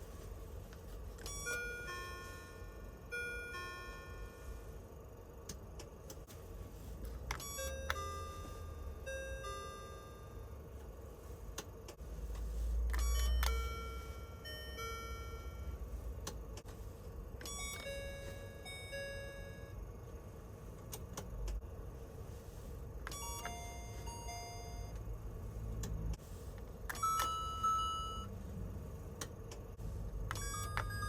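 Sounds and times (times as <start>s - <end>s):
steady low rumble: 0.0s - 26.9s, 27.9s - 31.0s
bus stop request chime: 13.0s - 15.9s, 27.0s - 28.4s.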